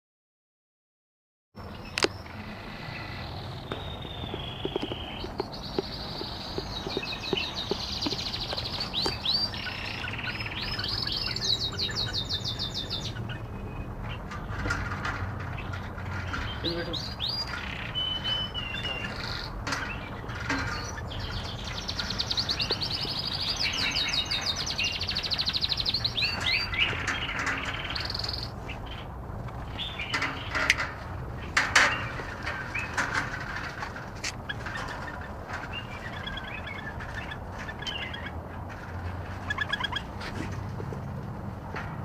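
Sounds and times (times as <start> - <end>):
bird trill: 1.6 - 14.5, 15.4 - 29.1, 34.5 - 38.4, 39.4 - 40.1
birds chirping and calling: 1.6 - 41.9.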